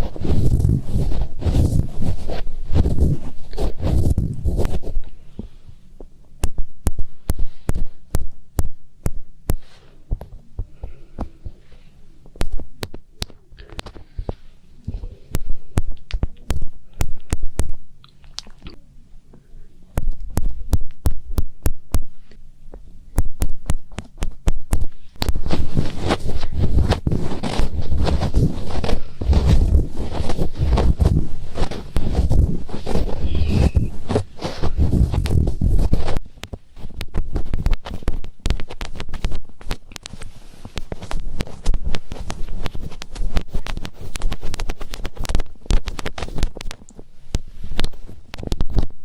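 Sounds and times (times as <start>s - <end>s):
fingers crackling in microphone ear: 0.0s - 11.6s, 12.3s - 18.8s, 19.9s - 49.0s
muffled rumbling of pressing fingers: 0.0s - 49.0s.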